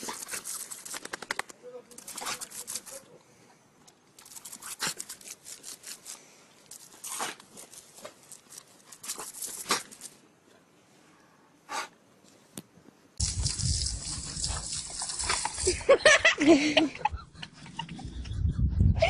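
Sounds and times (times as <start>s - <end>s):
crackling tearing noises: 0.0s - 3.2s, 3.9s - 10.2s.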